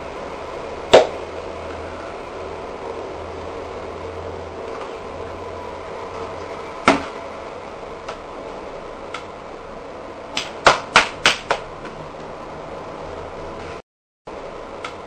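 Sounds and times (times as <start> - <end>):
steady background hum: 0.0 - 15.0
sharp knocks: 10.4 - 11.7.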